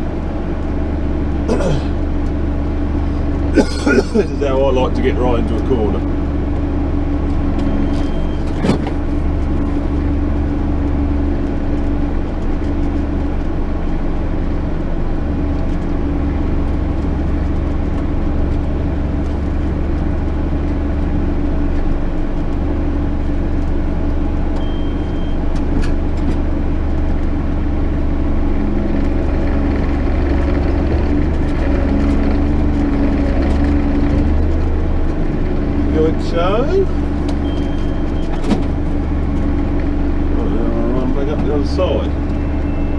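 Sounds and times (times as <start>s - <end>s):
tractor engine drone: 0.0s - 42.9s.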